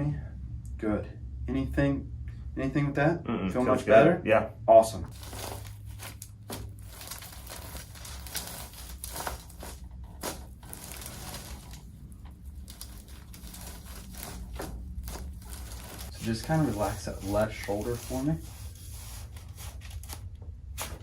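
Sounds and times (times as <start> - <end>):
rustling on treatment table: 5.1 - 21.0.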